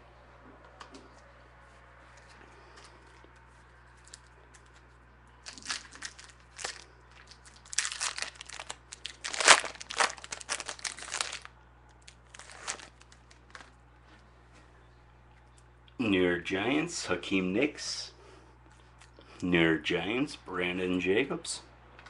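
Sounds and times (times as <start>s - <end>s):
foil wrapper crinkling: 5.4s - 13.8s.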